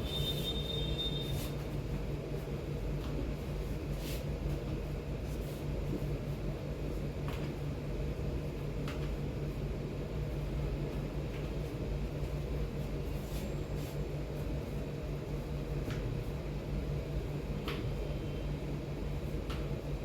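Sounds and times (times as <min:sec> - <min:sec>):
ventilation fan hum: 0:00.0 - 0:20.0.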